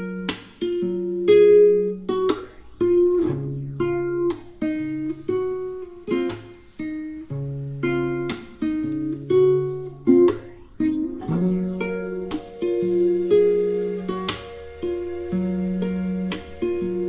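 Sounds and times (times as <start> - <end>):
lofi guitar chords: 0.0 - 17.0.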